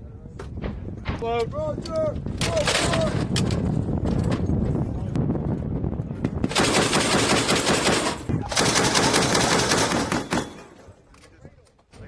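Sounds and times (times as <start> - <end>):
machine gun automatic fire: 6.5 - 10.7.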